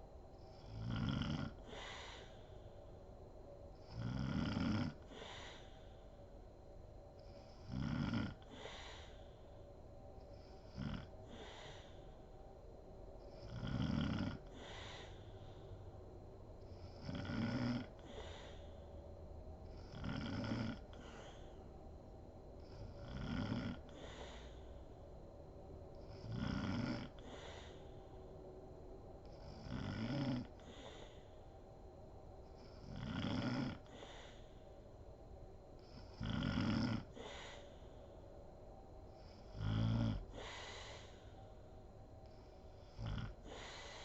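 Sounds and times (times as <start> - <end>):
woman snoring: 0.5 - 2.5, 3.8 - 5.8, 7.2 - 9.2, 10.3 - 12.2, 13.3 - 15.4, 16.7 - 18.8, 19.6 - 21.6, 22.6 - 24.8, 26.0 - 27.9, 29.2 - 31.4, 32.6 - 34.7, 35.8 - 38.0, 39.2 - 41.3, 42.6 - 44.0.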